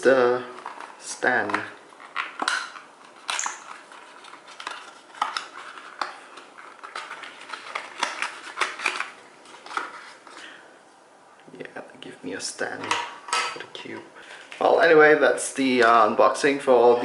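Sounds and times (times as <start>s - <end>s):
plastic pieces clicking and rustling: 0.6s - 10.4s.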